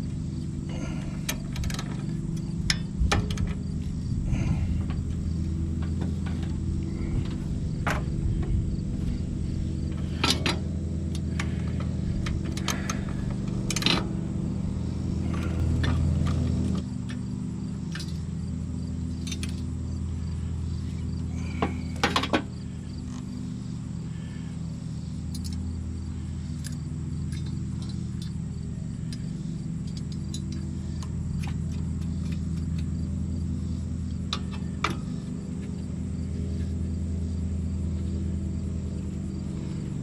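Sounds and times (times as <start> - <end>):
low machine hum: 0.0 - 40.0.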